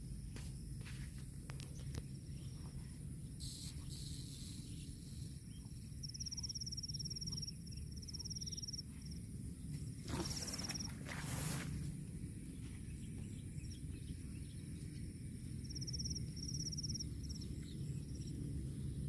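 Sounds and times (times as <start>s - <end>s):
insect trilling: 10.1s - 11.0s.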